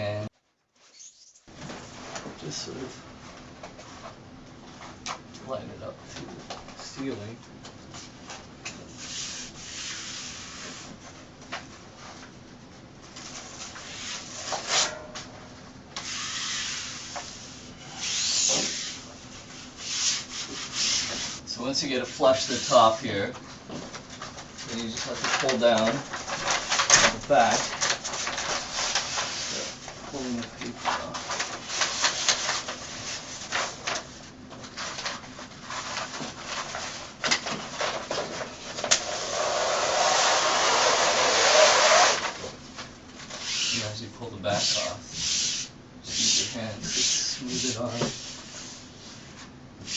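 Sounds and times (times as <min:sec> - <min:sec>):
liner peeling noise: 0:08.9 - 0:11.1, 0:13.1 - 0:15.0, 0:16.0 - 0:21.4, 0:22.0 - 0:23.2, 0:24.2 - 0:49.9
fabric wallcovering rustling on wall: 0:22.2 - 0:43.9.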